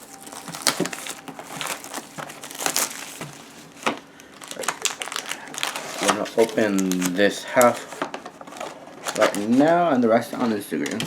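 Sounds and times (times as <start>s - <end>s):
packaging crinkling and tearing: 0.0s - 11.0s.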